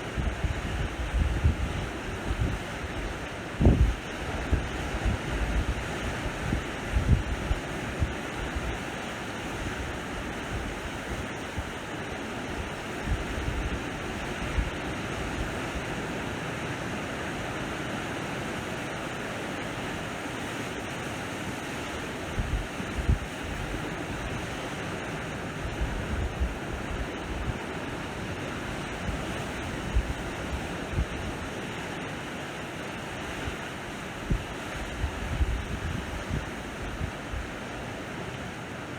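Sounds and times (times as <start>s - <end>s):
wind buffeting microphone: 0.0s - 8.8s, 22.3s - 31.5s, 34.2s - 38.1s
sea waves washing ashore: 0.0s - 38.9s.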